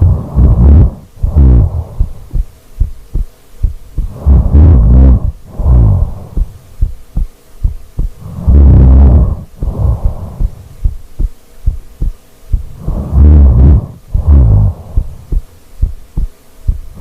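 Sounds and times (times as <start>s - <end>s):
loud rough snoring: 0.0s - 2.2s, 4.0s - 6.4s, 8.2s - 10.6s, 12.7s - 15.2s
faint low thumps: 0.0s - 17.0s.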